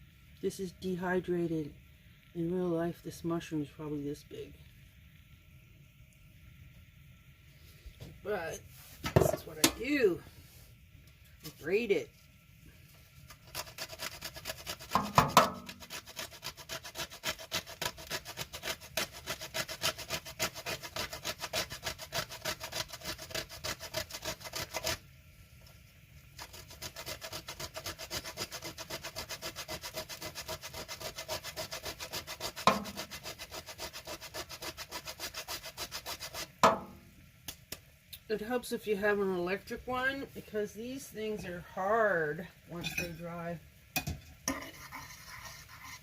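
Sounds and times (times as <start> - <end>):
mushroom scraped on grater: 13.2 - 25.0, 26.4 - 36.6, 44.5 - 46.0.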